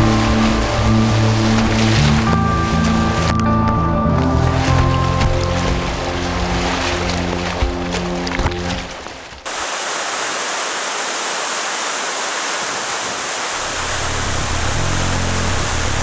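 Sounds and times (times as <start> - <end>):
background music: 0.0 - 9.0
rushing white water: 0.0 - 16.0.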